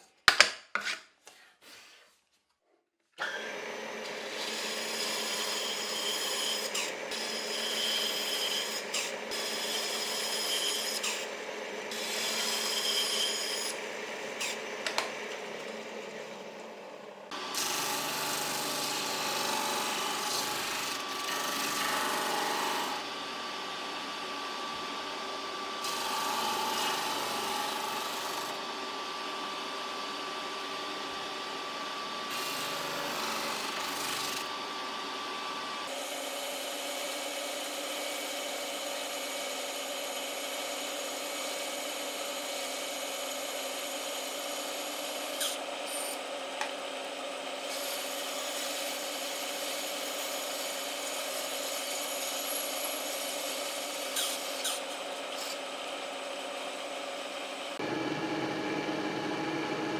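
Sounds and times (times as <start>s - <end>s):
power tool cutting wood: 3.2s - 59.9s.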